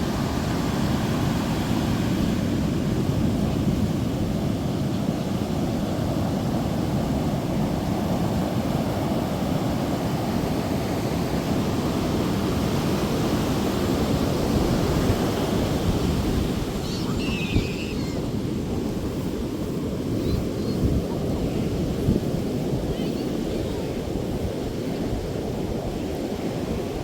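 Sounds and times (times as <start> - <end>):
ocean surf: 0.0 - 27.0
wind on microphone: 0.0 - 27.0
high chirp: 16.9 - 18.2.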